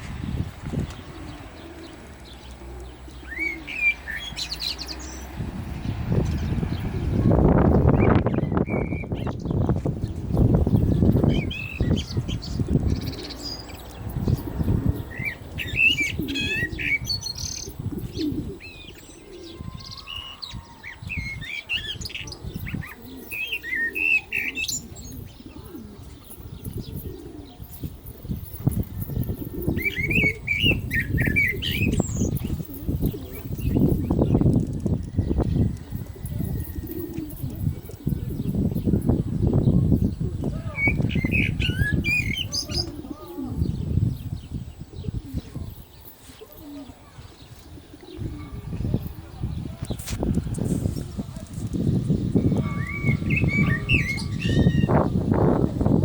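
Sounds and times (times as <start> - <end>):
blackbird singing: 0.0 - 56.0.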